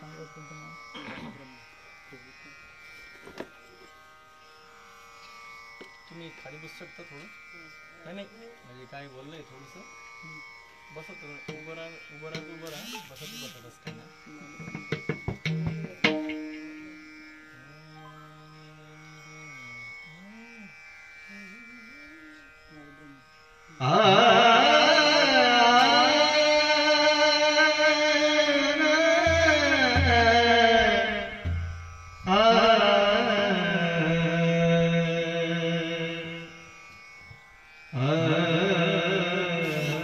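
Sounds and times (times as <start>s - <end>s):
instrumental drone: 0.0s - 40.0s
man singing: 23.8s - 36.6s, 38.0s - 40.0s.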